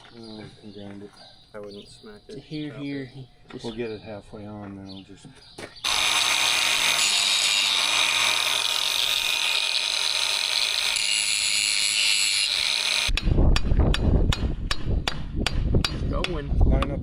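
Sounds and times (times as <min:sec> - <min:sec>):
power grinder grinding metal: 0:05.8 - 0:13.1.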